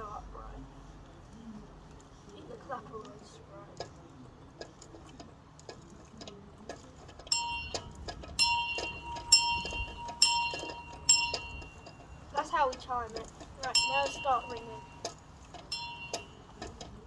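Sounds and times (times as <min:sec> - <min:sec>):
bell ringing: 0:07.3 - 0:12.1, 0:13.7 - 0:15.0, 0:15.7 - 0:16.5.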